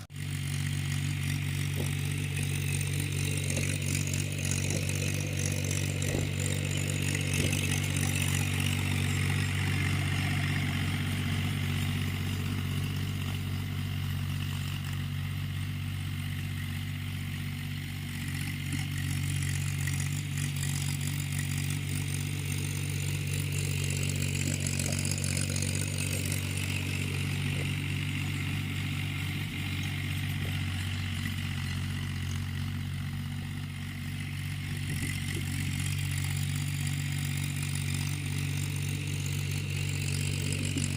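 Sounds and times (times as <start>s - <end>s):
tractor diesel engine running: 0.0s - 40.9s.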